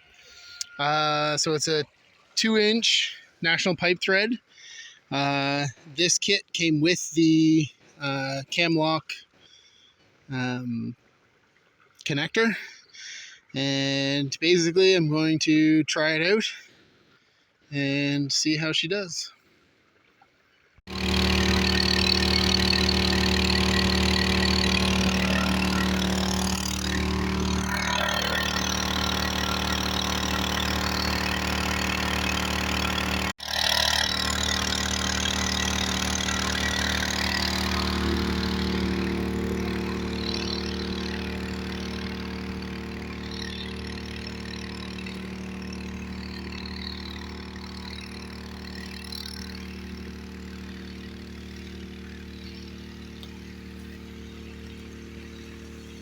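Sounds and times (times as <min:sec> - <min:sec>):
small gasoline engine running: 0:20.9 - 0:56.0.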